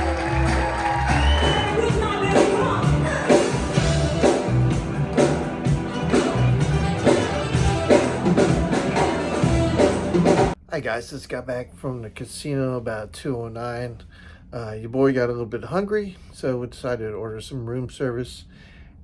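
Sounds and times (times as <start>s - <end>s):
bass: 0.0s - 10.6s
drum beat: 0.0s - 10.6s.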